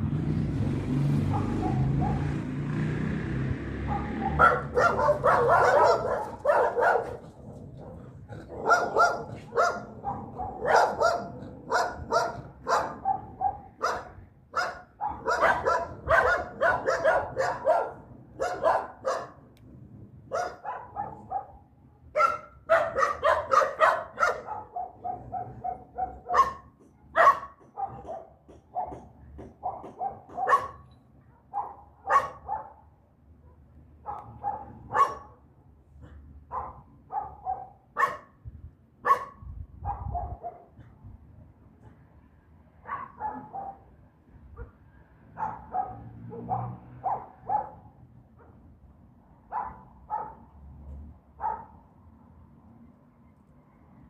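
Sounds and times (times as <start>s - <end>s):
dog barking: 1.3s - 2.4s, 3.8s - 19.4s, 20.3s - 35.5s, 36.5s - 38.4s, 39.0s - 40.8s, 42.8s - 43.9s, 44.6s - 48.6s, 49.5s - 50.5s, 51.4s - 51.8s.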